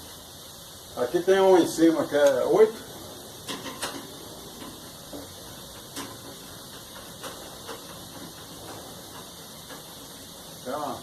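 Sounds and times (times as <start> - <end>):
steady background hiss: 0.0 - 11.0.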